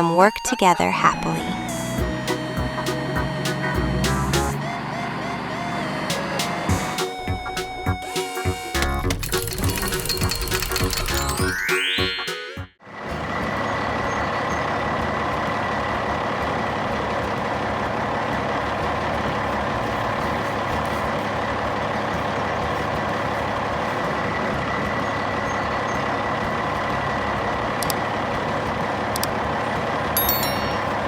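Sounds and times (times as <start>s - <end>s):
truck engine droning: 1.1s - 11.4s, 12.8s - 31.0s.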